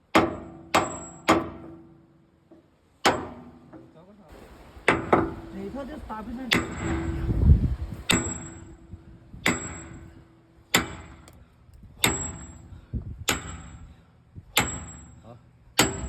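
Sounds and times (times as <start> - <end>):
hammer striking steel: 0.1 - 2.0, 3.0 - 3.9, 4.9 - 5.5, 6.5 - 7.3, 8.1 - 11.4, 12.0 - 13.9, 14.6 - 15.2, 15.8 - 16.0.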